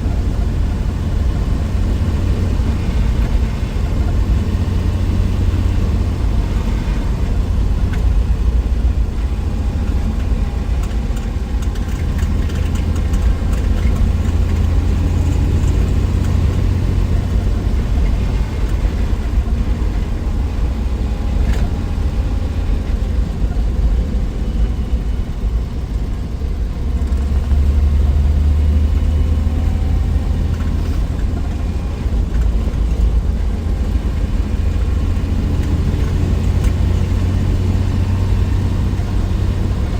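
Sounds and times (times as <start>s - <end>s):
engine and road drone: 0.0s - 39.9s.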